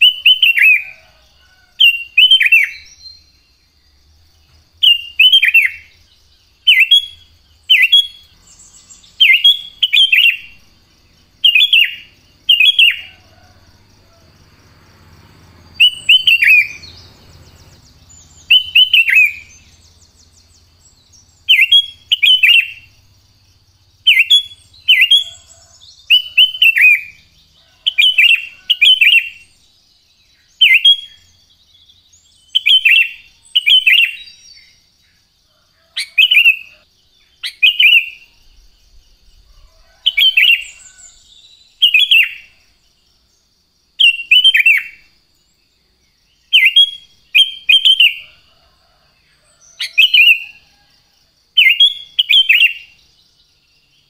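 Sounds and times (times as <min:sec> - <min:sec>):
bird calling: 0:00.0 - 0:03.4, 0:04.8 - 0:14.6, 0:15.4 - 0:23.2, 0:24.0 - 0:29.6.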